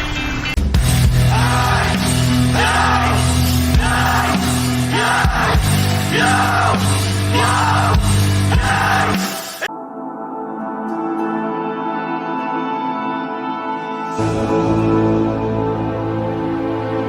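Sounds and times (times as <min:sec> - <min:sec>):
loud rock music: 0:00.0 - 0:09.7.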